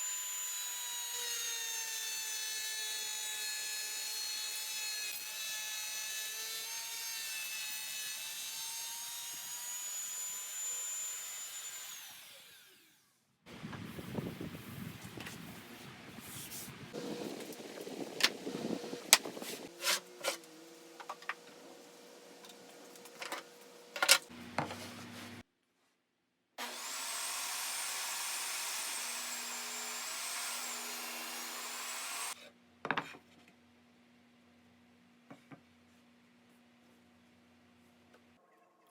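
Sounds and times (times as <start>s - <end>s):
power tool cutting wood: 0.0s - 13.1s, 26.6s - 32.4s.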